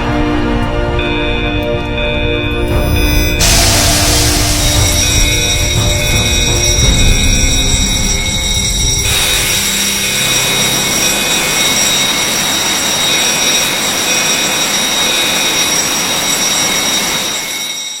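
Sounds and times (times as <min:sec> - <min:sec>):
faint high whistling tones: 0:02.6 - 0:18.0
loud rushing hiss: 0:03.3 - 0:07.0, 0:09.0 - 0:17.6.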